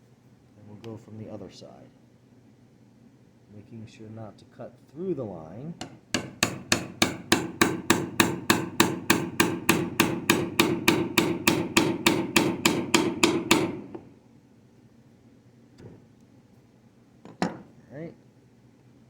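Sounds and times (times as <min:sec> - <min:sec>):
hammer striking chisel: 0:05.8 - 0:14.1.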